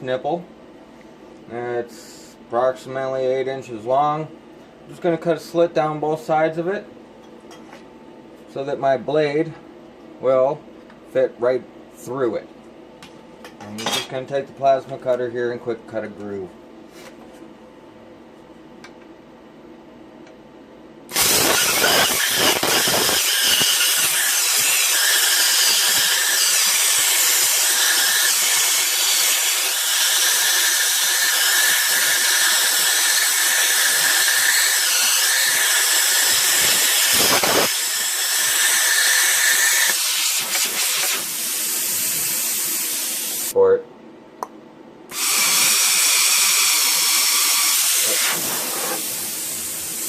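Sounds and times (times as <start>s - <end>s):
plasma cutter hissing: 21.1s - 43.5s, 45.2s - 50.0s.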